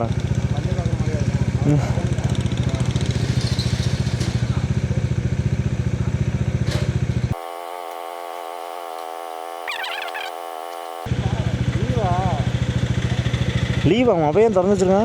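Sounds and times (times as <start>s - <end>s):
motorcycle engine idling: 0.0s - 3.1s, 4.3s - 15.0s
thin hum: 7.4s - 11.1s
high warbling sound: 9.6s - 10.5s.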